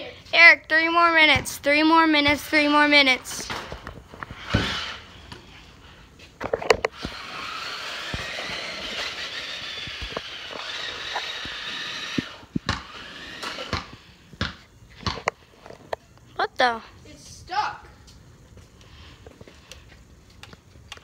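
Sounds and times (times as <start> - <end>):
toy car electric motor whirring: 4.2 - 5.2, 6.6 - 14.1.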